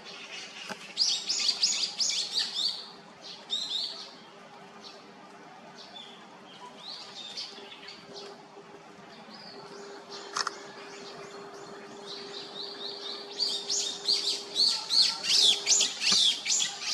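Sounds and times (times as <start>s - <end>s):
woodpecker chicks chirping: 9.6s - 16.9s.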